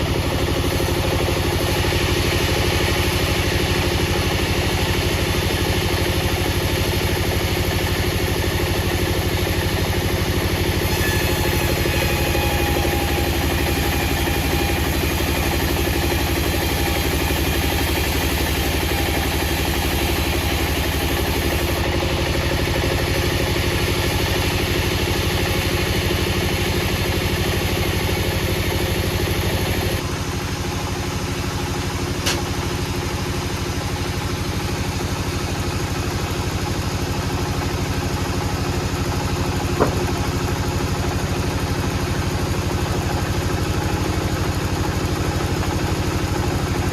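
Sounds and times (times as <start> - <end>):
engine idling: 0.0 - 46.9.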